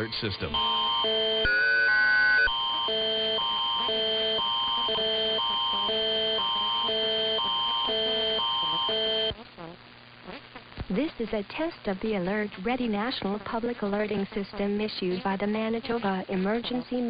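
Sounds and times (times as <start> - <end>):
alternating alert tone chords: 0.0 - 9.3
steady high tone: 0.0 - 9.3.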